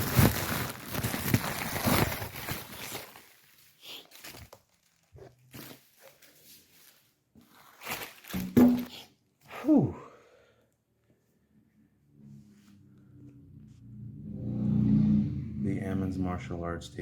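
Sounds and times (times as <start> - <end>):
plastic wrapping crinkling: 0.0 - 9.1.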